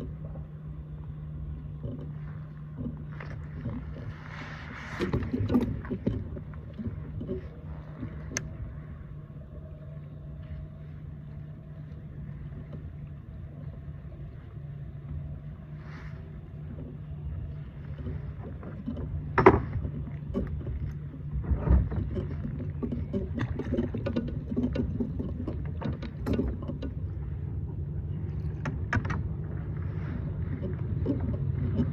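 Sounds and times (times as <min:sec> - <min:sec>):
steady low hum: 0:00.0 - 0:31.9.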